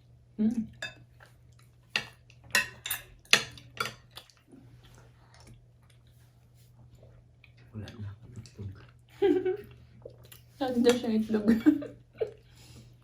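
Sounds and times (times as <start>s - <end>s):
spoons clinking against bowls: 1.9s - 4.1s.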